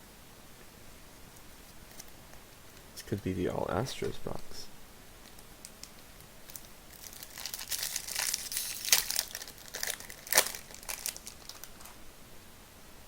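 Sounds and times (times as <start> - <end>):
plastic wrapper crinkling: 5.2 - 12.0.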